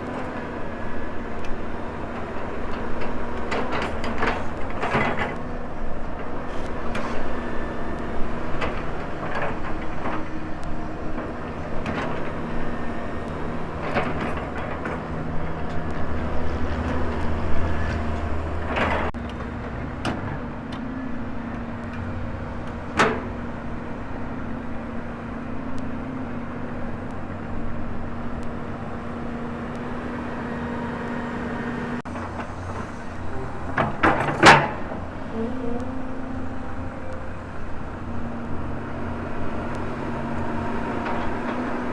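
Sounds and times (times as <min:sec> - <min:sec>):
excavator diesel engine running: 0:00.0 - 0:41.9
metallic clanks and knocks: 0:21.5 - 0:25.5, 0:32.0 - 0:41.9.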